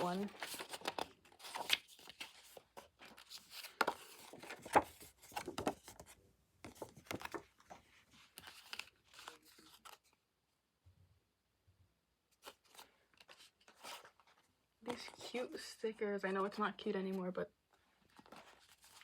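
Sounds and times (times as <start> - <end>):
paper and plastic crinkling: 0.0 - 10.2, 17.8 - 19.0.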